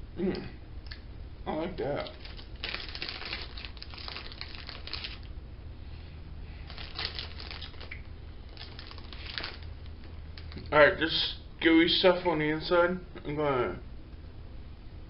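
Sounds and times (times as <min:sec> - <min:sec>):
plastic bag crinkling: 0:02.0 - 0:05.3, 0:06.6 - 0:10.7.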